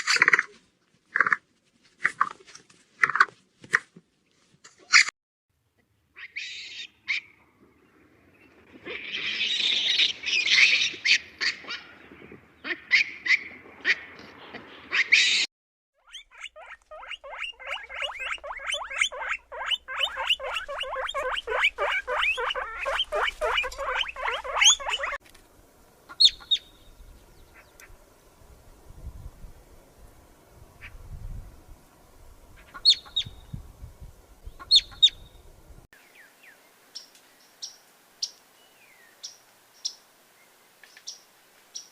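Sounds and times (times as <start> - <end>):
poultry calling: 14.9 - 25.2.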